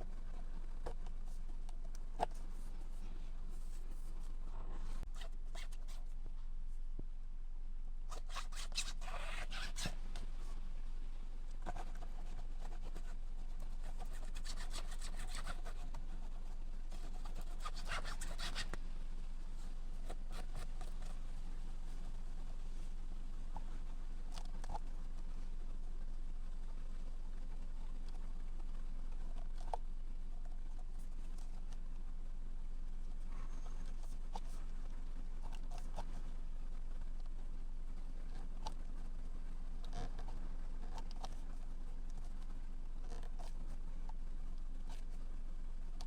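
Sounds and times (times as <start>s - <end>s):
hands rubbing steering wheel: 0.0s - 6.2s, 11.6s - 18.8s
steady low hum: 0.0s - 46.0s.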